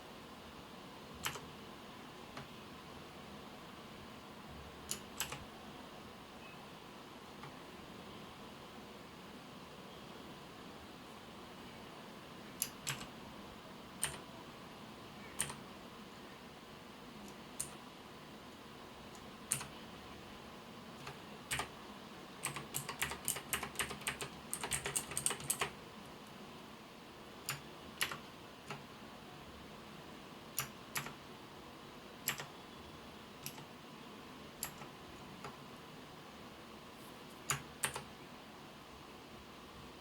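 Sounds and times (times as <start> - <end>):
mechanical keyboard typing: 1.2 - 1.5, 4.9 - 5.4, 12.6 - 13.1, 14.0 - 14.2, 15.4 - 15.6, 19.1 - 19.8, 21.0 - 21.7, 22.4 - 25.8, 27.4 - 28.8, 30.6 - 31.2, 32.2 - 32.5, 33.4 - 33.7, 34.6 - 35.6, 37.4 - 38.1.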